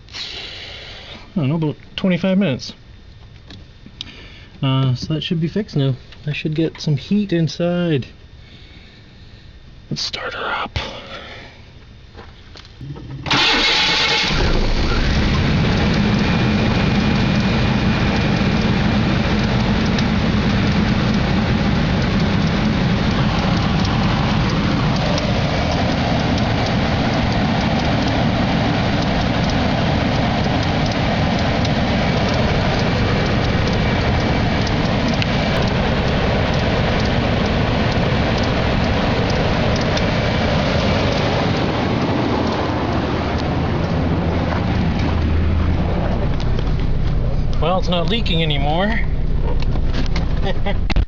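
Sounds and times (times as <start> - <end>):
van engine running: 12.8 - 51.0.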